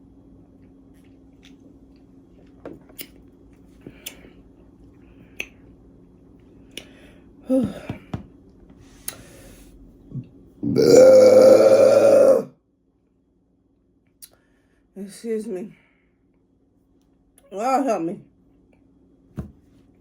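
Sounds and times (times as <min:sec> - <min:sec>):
wet mouth clicks and smacks: 0:05.4 - 0:05.6
throaty gulp: 0:10.6 - 0:12.5.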